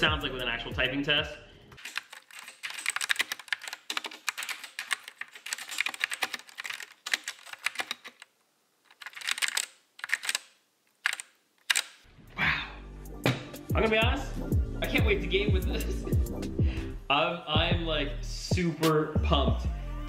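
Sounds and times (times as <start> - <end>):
mechanical keyboard typing: 1.8 - 8.3, 8.9 - 11.9.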